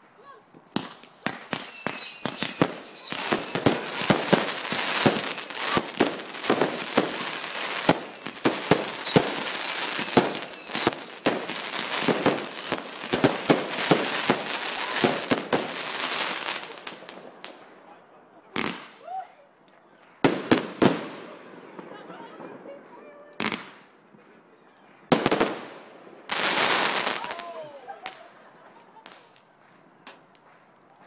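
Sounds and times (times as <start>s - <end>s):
fireworks bangs: 0.7s - 17.8s, 18.6s - 19.0s, 20.1s - 24.4s, 25.0s - 28.2s
fireworks crackle: 0.7s - 17.8s, 25.1s - 29.6s
high wavering whistle: 1.4s - 15.3s.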